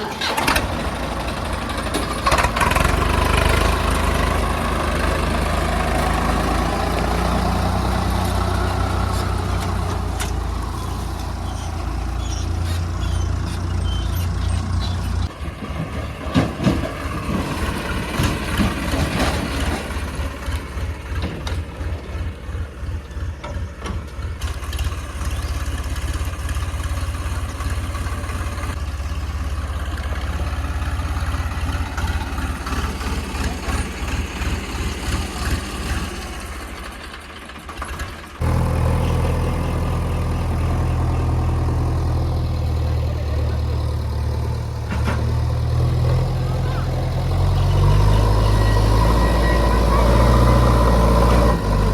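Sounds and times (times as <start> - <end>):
heavy diesel engine running: 0.0 - 51.9
knocks and clanks: 9.0 - 25.0, 44.8 - 46.3.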